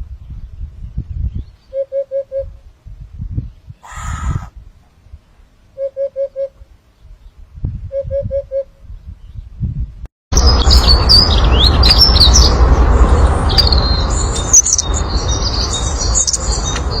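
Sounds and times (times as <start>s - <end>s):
birds chirping: 3.4s - 5.9s, 10.4s - 17.0s
low hoots: 3.8s - 4.6s
loud steady rumble: 10.4s - 17.0s.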